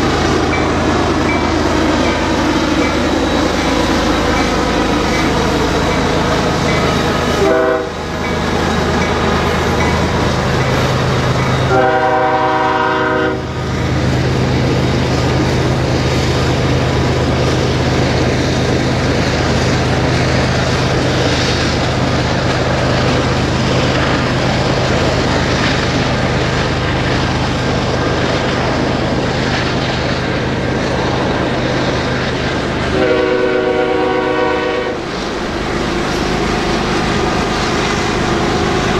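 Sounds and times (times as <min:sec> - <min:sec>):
diesel locomotives passing: 0:00.0 - 0:38.9
train rumble: 0:00.0 - 0:38.9
multi-note air horn: 0:07.4 - 0:08.0, 0:11.7 - 0:13.5, 0:32.9 - 0:35.0.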